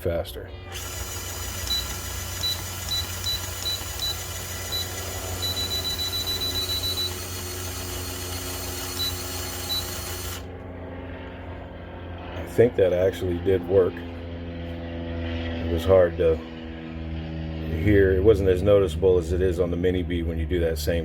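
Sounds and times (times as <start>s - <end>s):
long transmitter tone: 0.5s - 10.5s
electric motor whining: 0.5s - 10.6s
transmitter short beeps: 1.7s - 7.2s.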